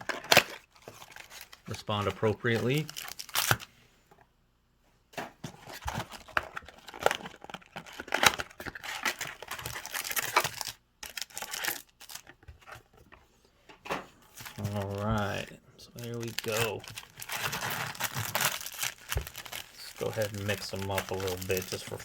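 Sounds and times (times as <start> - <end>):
packaging being torn and crinkled: 0.0 - 1.6, 2.6 - 3.7, 5.9 - 12.4, 14.4 - 22.0.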